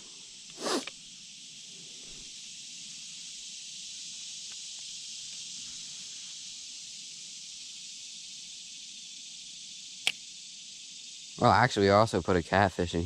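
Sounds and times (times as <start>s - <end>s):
high-pitched outdoor hiss: 0.0s - 13.0s
faint ticks: 4.4s - 5.7s.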